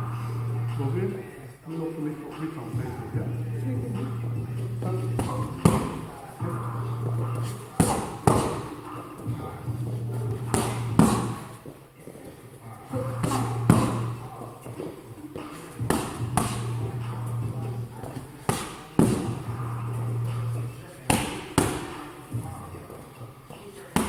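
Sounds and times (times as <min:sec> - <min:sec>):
strikes smacking training pads: 0:07.8 - 0:08.7, 0:10.5 - 0:11.4, 0:13.2 - 0:14.1, 0:15.8 - 0:16.7, 0:18.1 - 0:19.4, 0:21.1 - 0:22.0.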